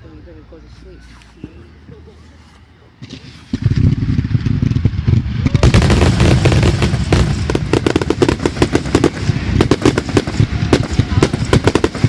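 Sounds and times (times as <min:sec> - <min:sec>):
steady low rumble: 0:01.6 - 0:12.0
fireworks popping and crackling: 0:03.0 - 0:12.0.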